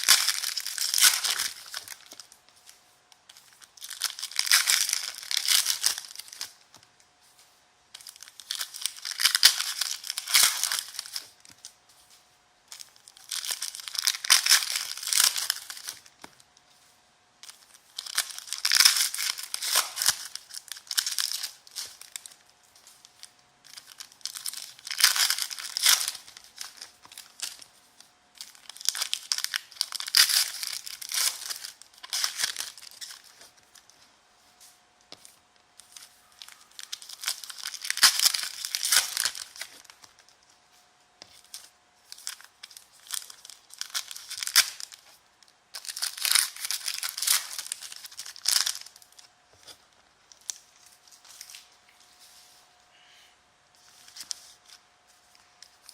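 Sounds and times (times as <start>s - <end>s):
foil packs tearing: 0.0s - 2.2s, 3.8s - 6.5s, 8.0s - 11.3s, 13.1s - 16.0s, 17.4s - 22.4s, 23.7s - 27.6s, 28.4s - 33.5s, 36.4s - 40.2s, 41.4s - 45.1s, 45.8s - 49.1s
wrappers crinkling: 0.0s - 52.8s, 53.8s - 55.9s.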